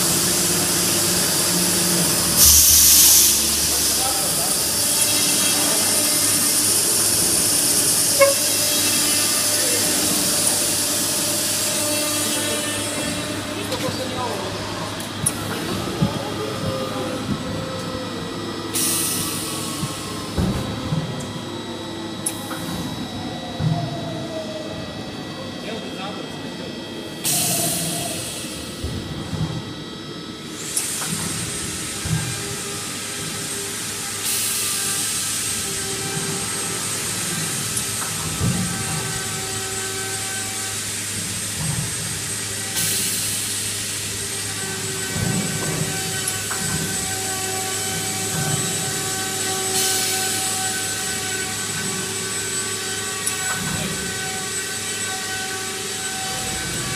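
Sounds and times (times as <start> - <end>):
loud high hiss: 1.5 - 9.4
burst of hiss: 2.4 - 4.3
wood router whining: 3.4 - 14.1, 44.2 - 56.9.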